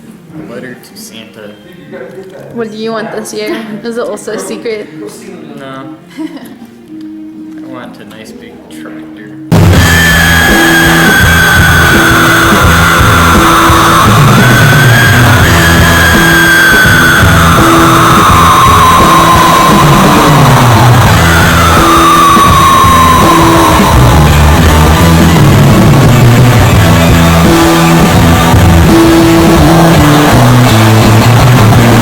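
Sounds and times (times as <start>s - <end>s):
loud rock music: 9.5s - 32.0s
sliding falling notes: 9.5s - 32.0s.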